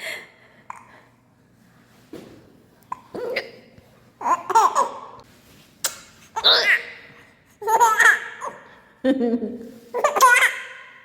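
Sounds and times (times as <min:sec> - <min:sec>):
baby laughing: 0:04.2 - 0:05.2, 0:07.6 - 0:08.7, 0:10.0 - 0:10.9.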